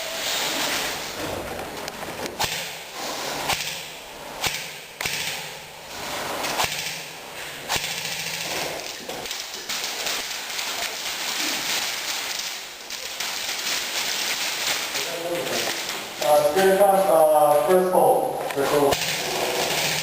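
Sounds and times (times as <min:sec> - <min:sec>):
airsoft gun shots: 0:02.4 - 0:02.8, 0:03.4 - 0:05.6, 0:06.5 - 0:08.7.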